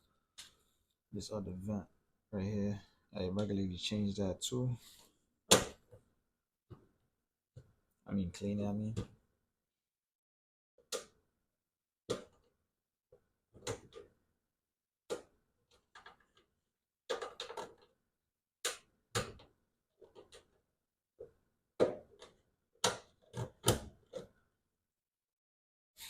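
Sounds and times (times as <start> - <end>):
plastic parts clicking and knocking: 12.0 - 12.6, 13.2 - 14.2, 15.0 - 18.0, 18.6 - 24.4.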